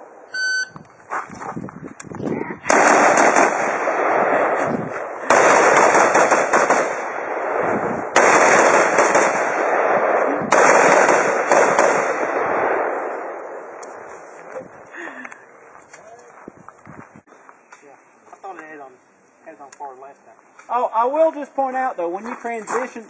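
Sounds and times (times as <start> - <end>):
rifle shots: 2.6 - 13.7.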